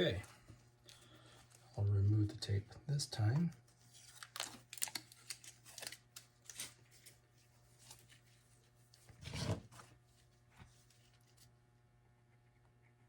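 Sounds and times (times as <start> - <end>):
tape being peeled off: 3.9 - 7.2.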